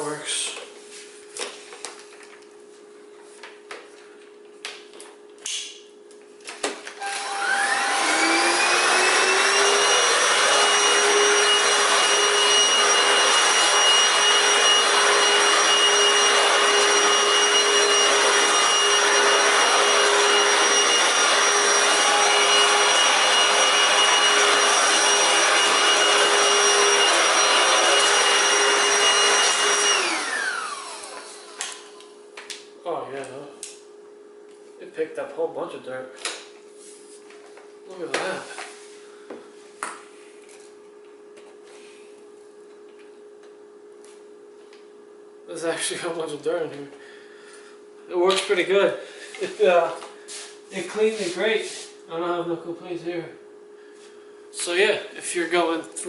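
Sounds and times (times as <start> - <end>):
vacuum cleaner motor whining: 6.6 - 32.2.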